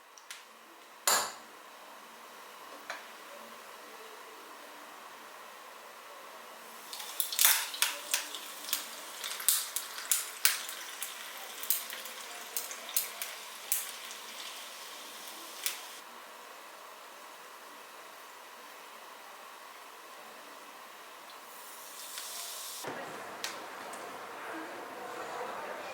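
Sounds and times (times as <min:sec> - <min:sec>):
food sizzling in a pan: 0:06.6 - 0:16.0, 0:21.0 - 0:22.9.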